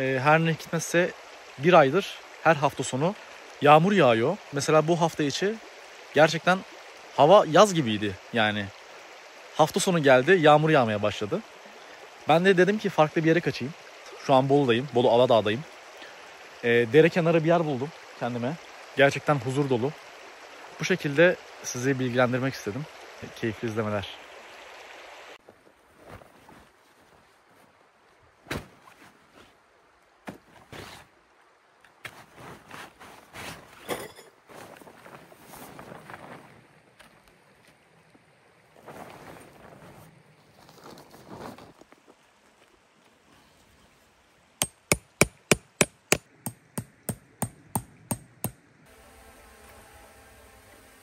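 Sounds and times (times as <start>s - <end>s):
soft rustling: 25.5s - 27.7s.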